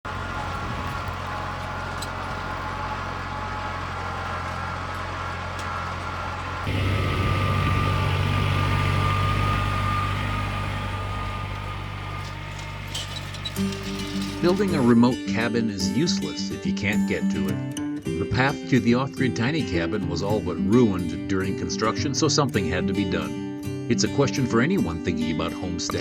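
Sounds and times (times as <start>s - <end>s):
small tractor engine running: 0.0s - 15.0s.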